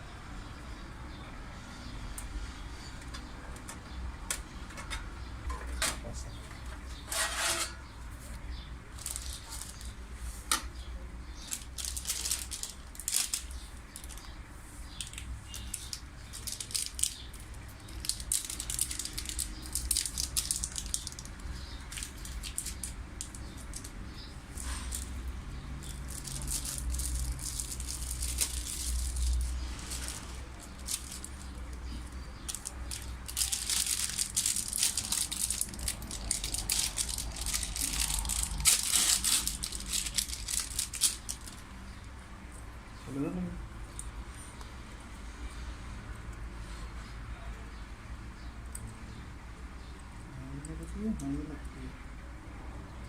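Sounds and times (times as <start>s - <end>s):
packaging rustling and crinkling: 8.9s - 9.9s, 11.4s - 14.2s, 15.0s - 23.9s, 25.9s - 41.6s.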